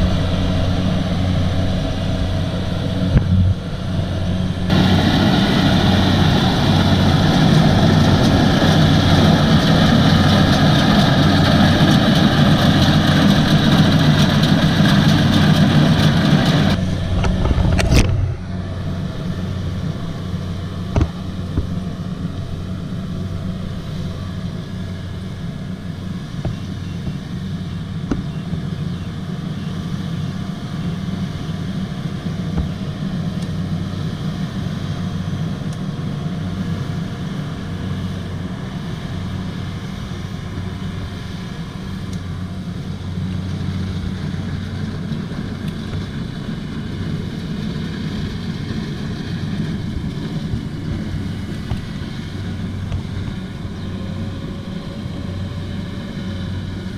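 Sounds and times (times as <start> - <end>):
diesel engine humming: 0.0 - 56.9.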